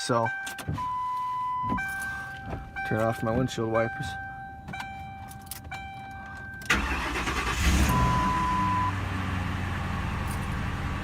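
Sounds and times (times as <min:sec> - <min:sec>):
steady chime tone: 0:00.0 - 0:06.8
car engine starting and idling: 0:00.9 - 0:11.0
short beep: 0:07.8 - 0:09.0.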